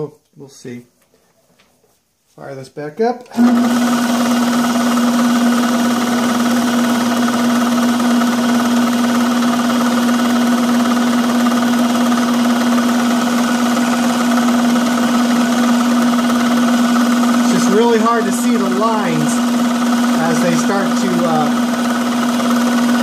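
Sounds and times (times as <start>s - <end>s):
electric motor humming: 3.3s - 23.0s.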